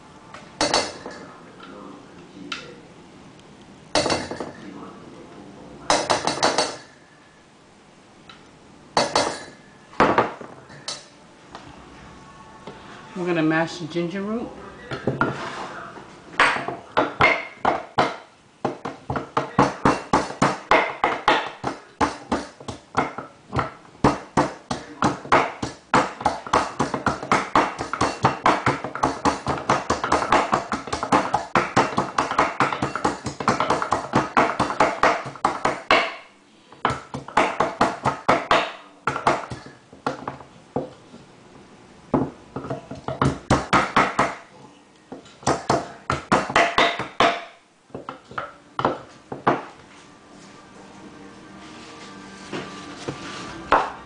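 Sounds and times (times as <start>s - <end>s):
pounding ginger root: 16.4s - 36.2s, 36.8s - 40.3s.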